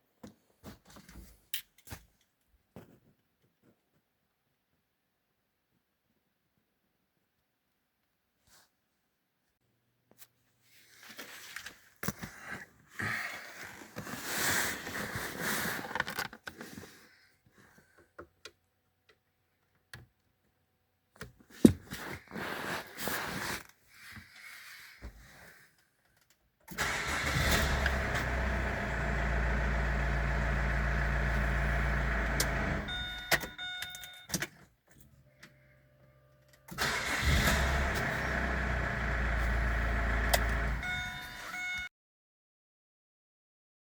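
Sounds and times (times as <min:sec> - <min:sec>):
car engine starting and running: 0:26.7 - 0:33.8, 0:36.2 - 0:41.9
short beeps: 0:32.9 - 0:34.3, 0:40.8 - 0:41.9.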